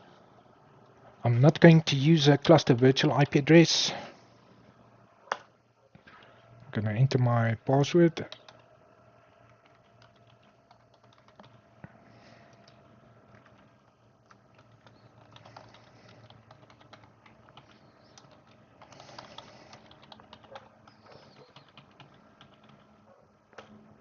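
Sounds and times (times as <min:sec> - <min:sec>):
faint keyboard typing: 0:08.2 - 0:23.9.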